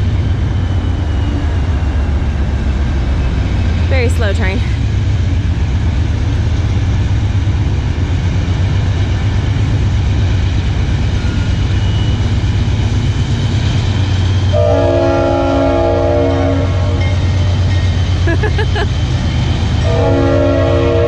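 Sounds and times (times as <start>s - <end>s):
train rumbling past: 0.0s - 21.0s
train horn chord: 14.5s - 17.0s, 19.8s - 21.0s.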